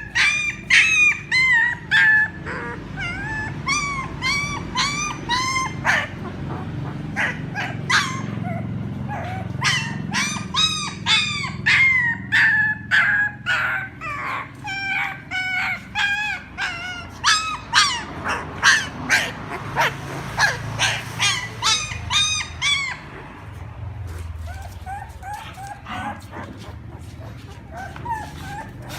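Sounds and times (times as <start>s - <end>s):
puppy whimpering cries: 0.0s - 28.9s.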